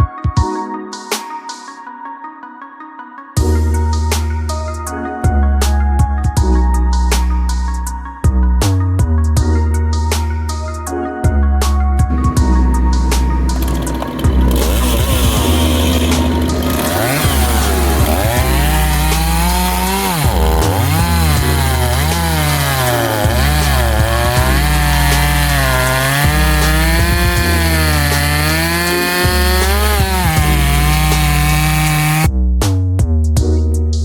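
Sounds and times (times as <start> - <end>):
chainsaw cutting wood: 12.1 - 32.3.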